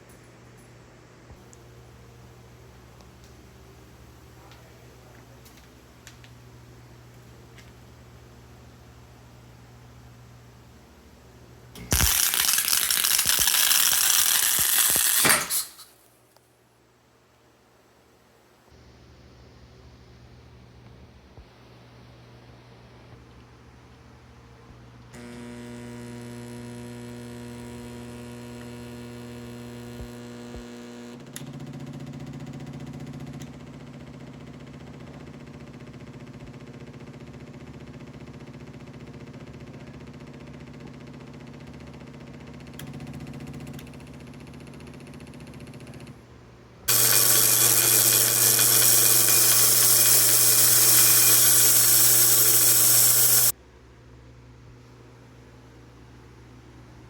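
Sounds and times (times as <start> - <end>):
welder humming: 11.8 - 15.9, 25.2 - 31.2, 46.9 - 53.5
loud hissing buzz: 46.9 - 53.5.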